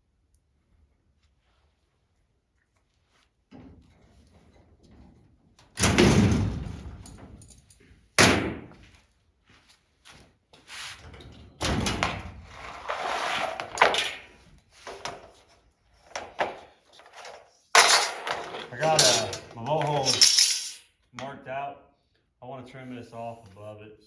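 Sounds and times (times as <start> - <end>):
knocks and clatter: 16.1 - 20.8.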